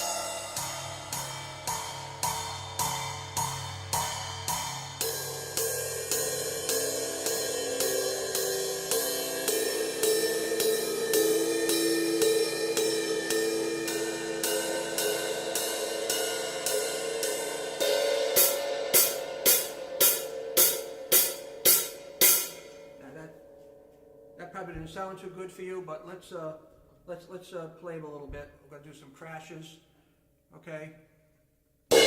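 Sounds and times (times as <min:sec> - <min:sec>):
cymbals struck and ringing: 0:00.0 - 0:24.3.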